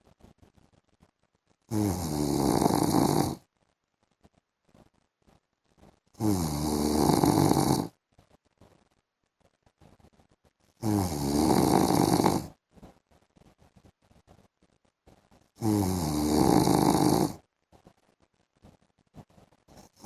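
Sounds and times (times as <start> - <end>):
man snoring: 1.7 - 3.4, 6.2 - 7.9, 10.8 - 12.5, 15.6 - 17.4, 19.8 - 20.0
quiet breathing: 15.6 - 17.4, 19.2 - 20.0.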